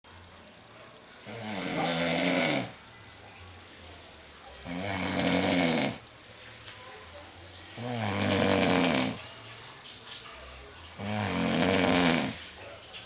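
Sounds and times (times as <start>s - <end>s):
man snoring loudly: 1.3s - 2.8s, 4.7s - 6.0s, 7.8s - 9.2s, 11.0s - 12.4s.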